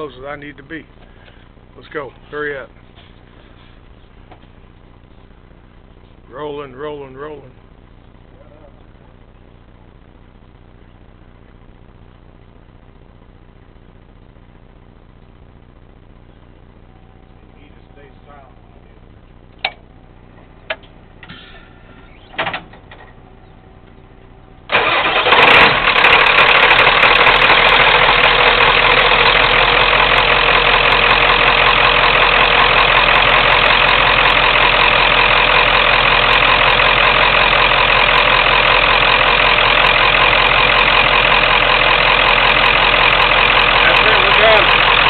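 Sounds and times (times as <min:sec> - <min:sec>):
diesel engine cranking and idling: 0:19.5 - 0:45.0.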